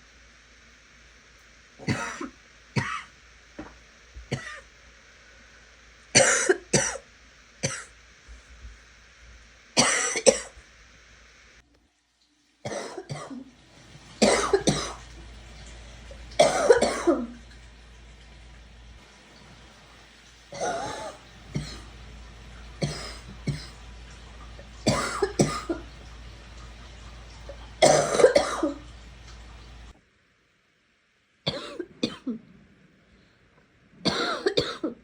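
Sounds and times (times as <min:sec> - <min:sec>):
person coughing: 0:01.8 - 0:03.1, 0:14.2 - 0:15.0, 0:16.4 - 0:17.4, 0:20.6 - 0:21.9, 0:22.8 - 0:23.8, 0:24.9 - 0:25.8, 0:27.8 - 0:28.8, 0:31.5 - 0:32.4, 0:34.1 - 0:35.0.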